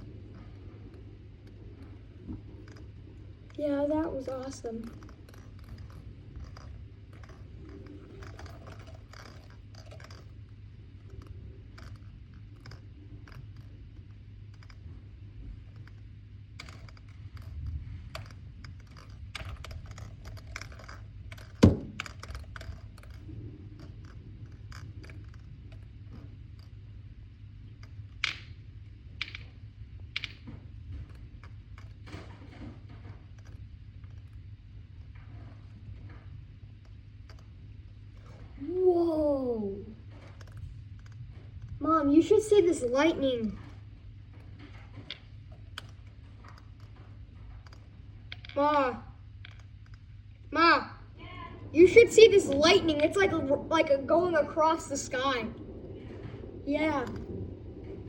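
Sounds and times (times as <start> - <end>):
light clicks and taps: 0.0 - 38.6
steady low hum: 0.0 - 58.0.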